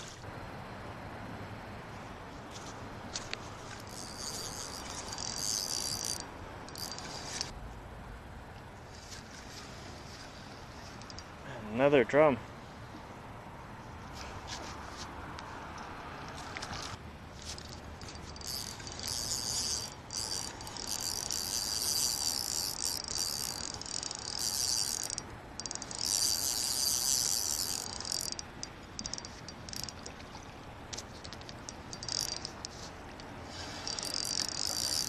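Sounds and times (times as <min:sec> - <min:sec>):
fishing reel whirring: 0:03.3 - 0:07.5, 0:11.0 - 0:11.3, 0:15.8 - 0:35.0.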